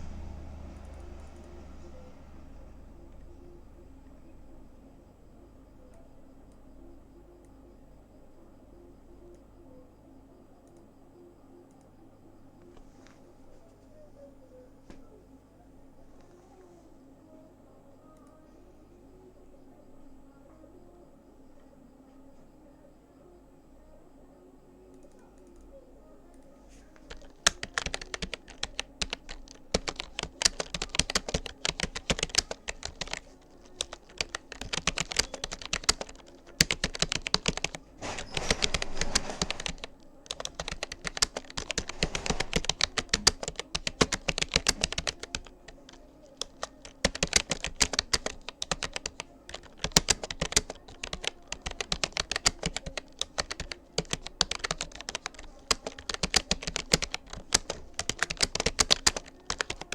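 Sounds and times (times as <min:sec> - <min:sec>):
keyboard typing clicks: 0:26.3 - 0:59.9.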